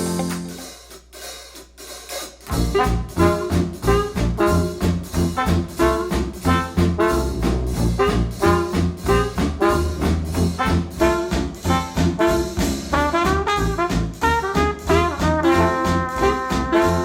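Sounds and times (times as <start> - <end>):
trombone: 0.0 - 0.7, 2.5 - 17.0
trumpet: 0.0 - 0.8, 2.5 - 17.0
swing jazz band playing: 0.0 - 17.0
bouncing bass beat: 2.4 - 17.0.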